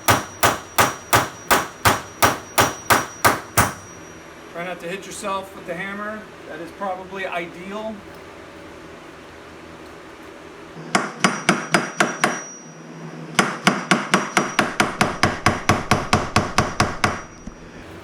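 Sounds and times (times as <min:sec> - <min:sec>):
hammer striking metal punch: 0:00.0 - 0:04.1, 0:11.0 - 0:12.6, 0:13.4 - 0:17.3.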